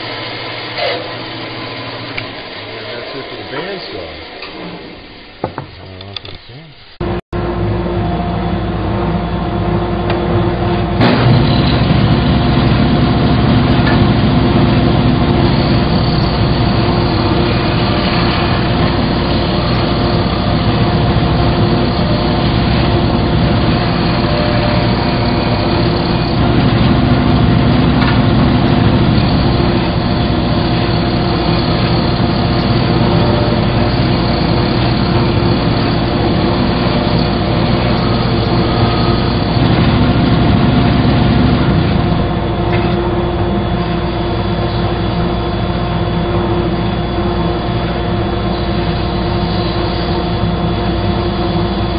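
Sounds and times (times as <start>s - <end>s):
woodworking power tool whining: 11.0s - 51.9s.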